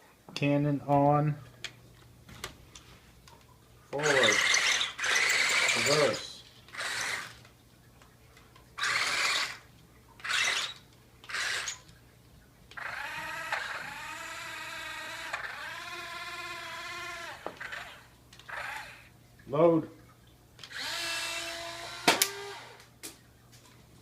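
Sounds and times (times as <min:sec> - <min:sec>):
toy tank motor whine: 0:04.0 - 0:07.4, 0:08.8 - 0:09.6, 0:10.2 - 0:11.8, 0:12.7 - 0:19.1, 0:20.6 - 0:22.8
toy tank motor whirring: 0:04.0 - 0:07.4, 0:08.8 - 0:11.9, 0:12.7 - 0:19.1, 0:20.6 - 0:22.8.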